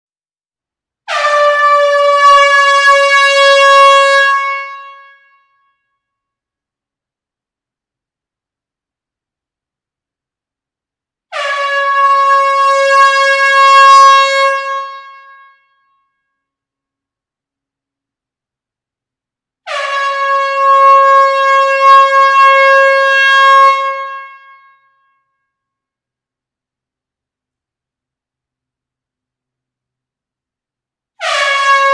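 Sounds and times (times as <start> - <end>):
air horn blast: 1.1 - 5.6, 11.3 - 15.8, 19.6 - 24.9, 31.2 - 31.9.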